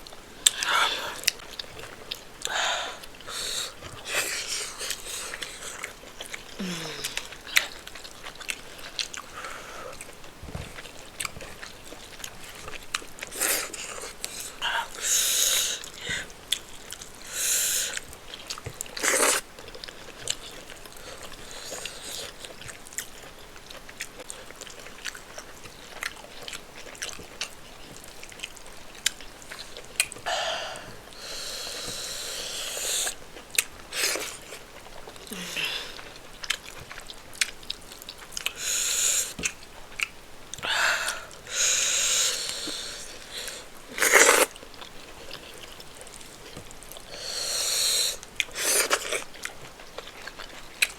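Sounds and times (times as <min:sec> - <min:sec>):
wet chewing and lip-smacking: 0:00.0 - 0:30.3, 0:30.9 - 0:50.9
hissing breath bursts: 0:30.3 - 0:33.2, 0:38.6 - 0:39.4, 0:40.7 - 0:43.7, 0:47.1 - 0:48.9.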